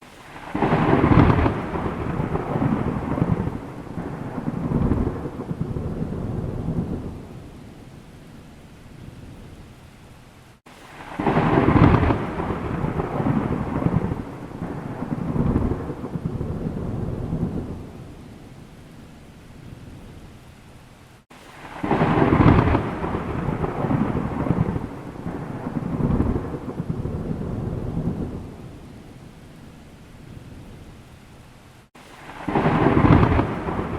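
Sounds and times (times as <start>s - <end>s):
steady low hiss: 0.0s - 33.9s
thunder rolling: 0.2s - 7.6s, 11.0s - 18.2s, 21.6s - 29.0s, 32.2s - 33.9s.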